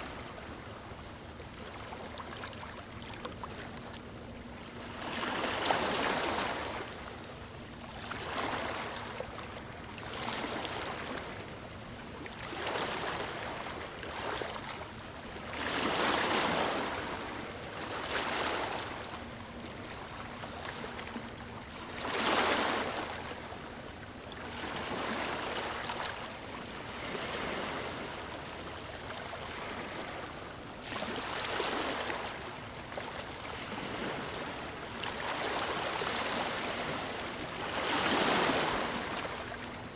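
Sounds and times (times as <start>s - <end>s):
ocean waves breaking on beach: 24.5s - 28.6s, 33.4s - 39.9s.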